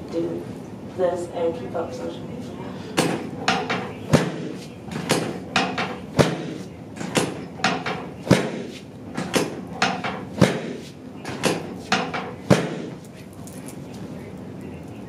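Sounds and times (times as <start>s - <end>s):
sharp knocks: 3.0s - 13.0s.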